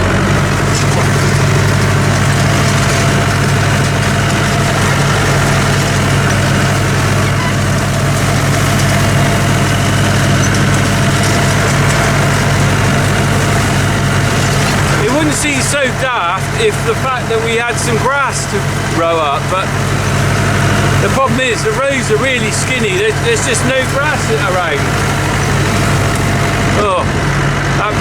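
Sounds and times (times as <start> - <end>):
tractor diesel engine running: 0.0 - 28.0.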